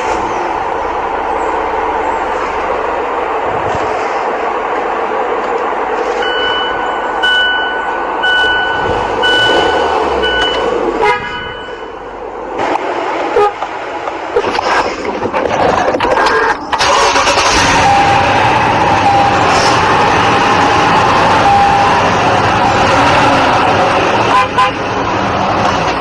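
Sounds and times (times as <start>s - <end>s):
traffic noise: 0.0s - 26.0s
short high horn beeps: 6.2s - 12.0s
horn blast: 6.2s - 12.1s.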